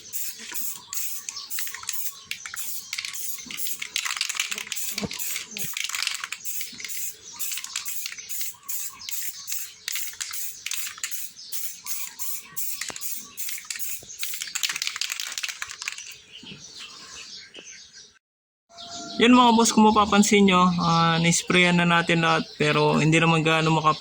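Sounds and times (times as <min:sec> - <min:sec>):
faint bird chirps: 0:00.0 - 0:03.8, 0:06.4 - 0:14.7, 0:15.8 - 0:24.0
spray can hissing: 0:00.0 - 0:14.8.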